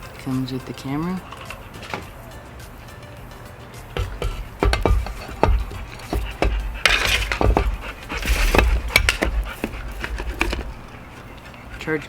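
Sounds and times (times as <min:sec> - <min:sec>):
clicks and knocks of handled accessories: 0:01.3 - 0:02.3, 0:04.0 - 0:12.0.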